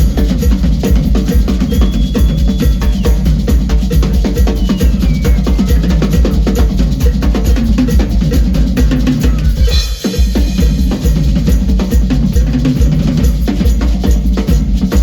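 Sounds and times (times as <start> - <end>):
drum kit solo: 0.0 - 15.0.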